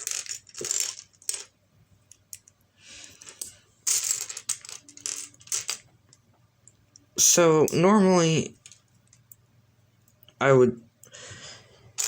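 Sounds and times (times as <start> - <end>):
plastic toy bricks clattering: 0.0 - 1.5, 3.1 - 5.9.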